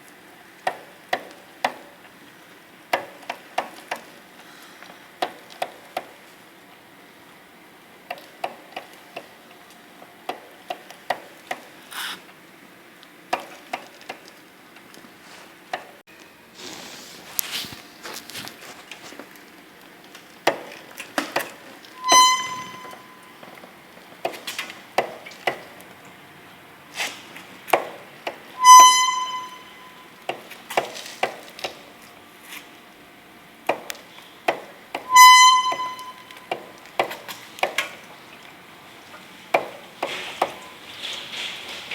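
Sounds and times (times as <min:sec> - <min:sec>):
short pitched chain squeaks: 0:22.0 - 0:23.4, 0:28.6 - 0:30.1, 0:35.1 - 0:36.5.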